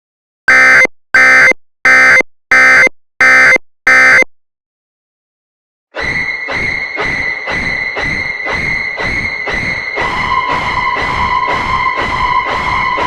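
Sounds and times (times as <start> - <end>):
harsh electronic beeps: 0.5 - 4.3.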